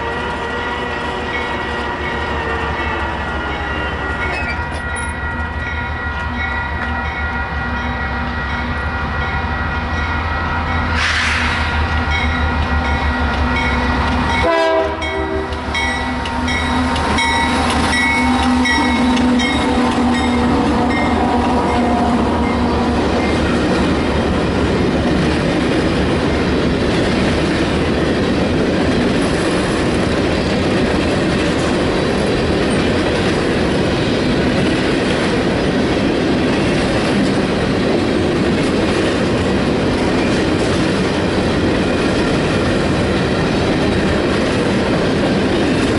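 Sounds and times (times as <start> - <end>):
train cars rolling on rails: 0.0 - 45.9
locomotive horn chord: 14.3 - 15.8.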